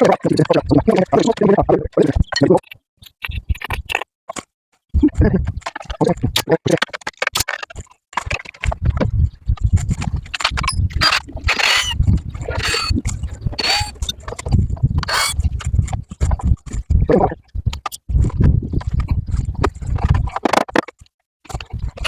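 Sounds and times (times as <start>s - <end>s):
chair squeaking: 10.2s - 15.5s.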